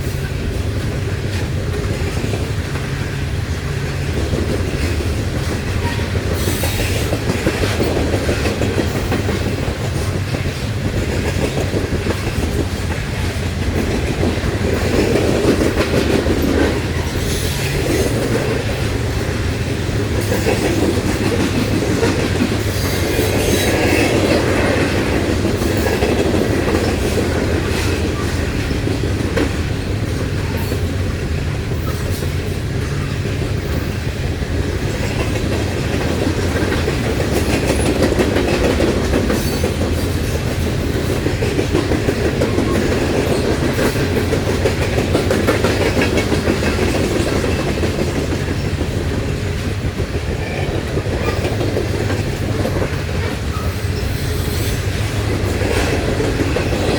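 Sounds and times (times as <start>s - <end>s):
freight train rumbling past: 0.0s - 56.9s
wheels clacking over rail joints: 0.0s - 56.9s.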